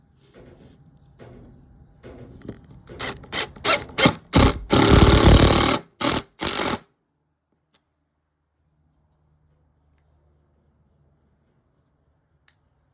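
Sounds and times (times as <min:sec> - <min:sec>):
power drill boring into wood: 0:03.0 - 0:06.8.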